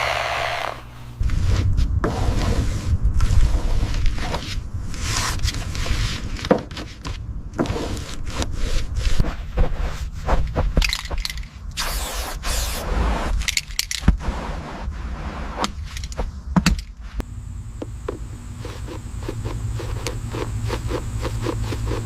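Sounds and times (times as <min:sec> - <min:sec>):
short rasping bursts: 0:00.0 - 0:00.9
steady low rumble: 0:00.8 - 0:06.4, 0:14.2 - 0:22.0.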